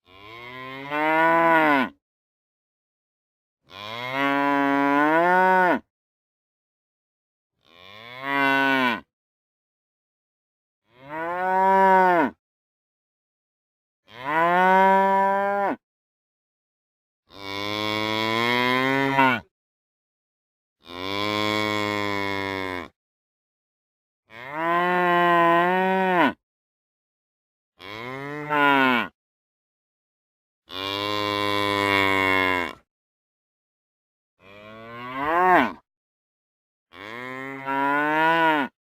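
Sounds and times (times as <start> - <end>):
cow mooing: 0.1 - 2.0, 3.7 - 5.8, 7.6 - 9.1, 10.9 - 12.4, 14.1 - 15.8, 17.3 - 19.5, 20.8 - 22.9, 24.3 - 26.4, 27.8 - 29.2, 30.7 - 32.8, 34.4 - 35.8, 36.9 - 38.8.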